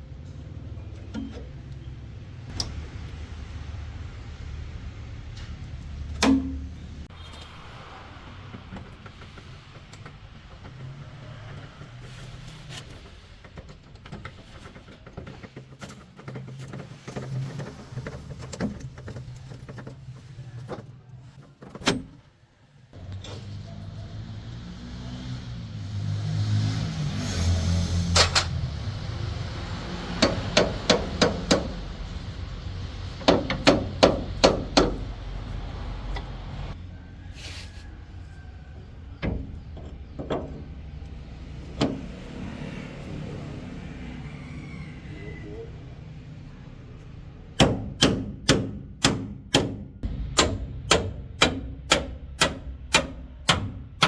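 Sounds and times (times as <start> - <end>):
low engine hum: 23.0 - 47.9.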